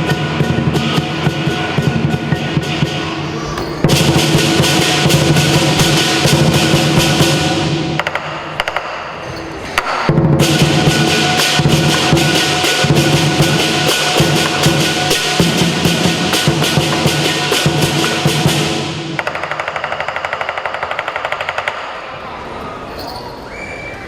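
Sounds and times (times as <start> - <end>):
big drum: 0.0 - 9.0, 9.8 - 21.6
cymbals crashing: 0.0 - 24.0
gong: 3.6 - 8.0.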